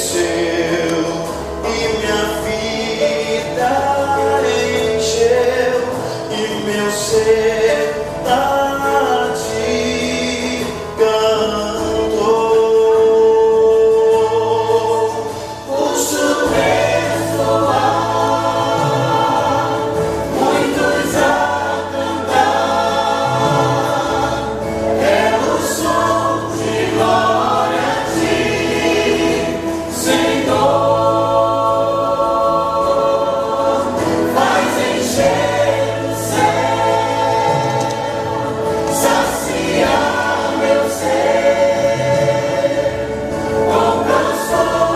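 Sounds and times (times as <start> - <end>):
choir singing gospel song: 0.0 - 44.9
low bass voices: 14.1 - 44.9.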